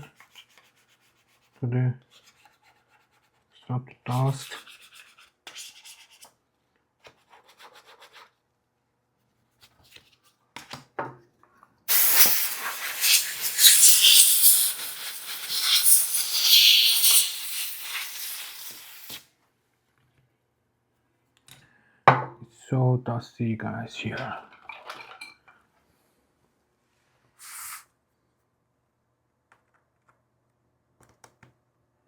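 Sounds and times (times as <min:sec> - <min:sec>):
brush scrubbing: 0:11.9 - 0:19.2.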